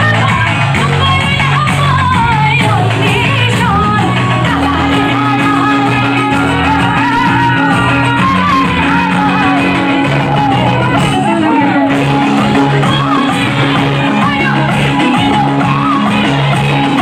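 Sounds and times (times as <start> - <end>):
person singing: 0.0 - 17.0.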